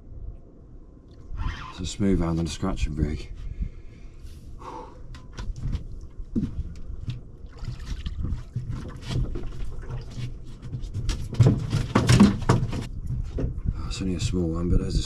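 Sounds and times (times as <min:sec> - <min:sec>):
knocks and clatter on a boat: 0:05.1 - 0:14.0
water sounds: 0:07.3 - 0:10.6.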